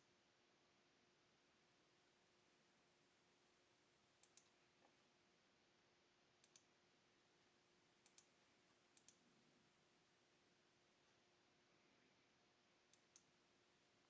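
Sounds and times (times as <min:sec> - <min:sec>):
computer mouse double-clicking: 0:04.2 - 0:04.6, 0:06.4 - 0:06.7, 0:08.0 - 0:08.3, 0:09.0 - 0:09.2.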